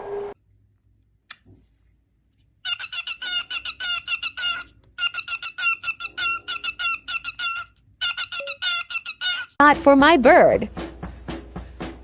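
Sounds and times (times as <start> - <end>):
cockatiel chirping: 2.6 - 9.6.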